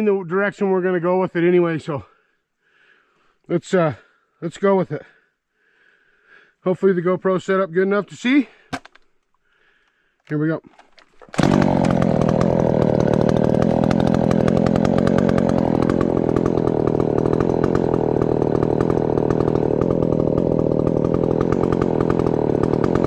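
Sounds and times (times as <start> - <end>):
chainsaw at full throttle cutting: 11.2 - 23.0.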